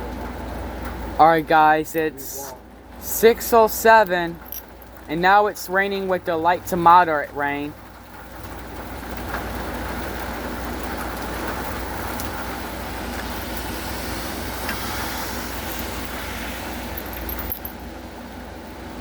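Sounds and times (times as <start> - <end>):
rain falling on cement: 0.0 - 1.2, 7.6 - 17.0
low steady rumble: 15.3 - 19.0.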